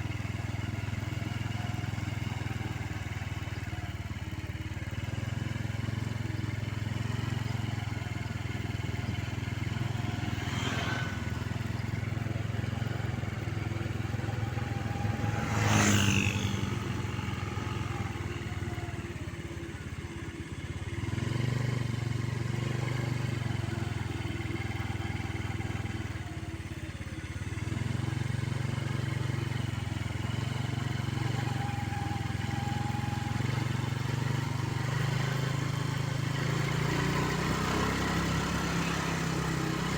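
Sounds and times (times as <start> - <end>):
diesel engine running: 0.0 - 21.2
engine coughing: 9.8 - 12.1.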